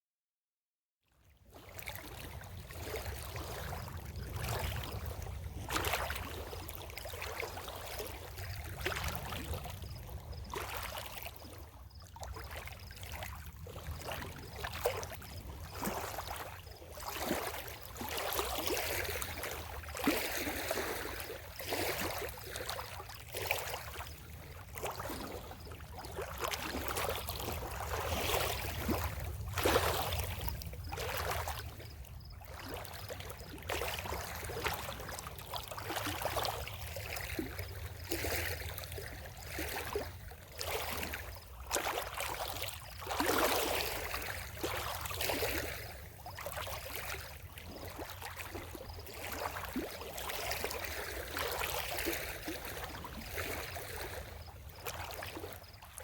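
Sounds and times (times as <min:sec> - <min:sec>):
water lapping in small splashes: 0:01.1 - 0:56.0.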